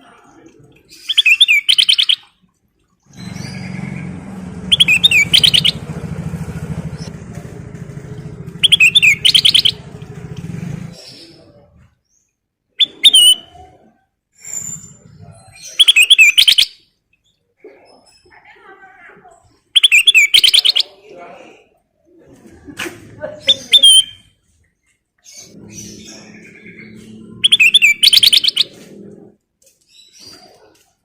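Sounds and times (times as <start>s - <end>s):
bulbul singing: 0.9s - 2.4s, 3.1s - 7.2s, 8.0s - 11.5s, 15.6s - 17.4s, 19.8s - 21.0s, 23.5s - 24.3s, 25.3s - 28.9s
low engine drone: 3.1s - 11.6s, 25.5s - 29.2s.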